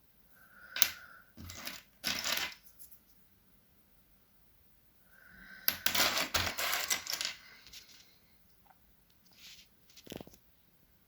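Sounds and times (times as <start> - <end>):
wooden puzzle pieces clattering: 0.8 - 2.7, 5.7 - 7.9.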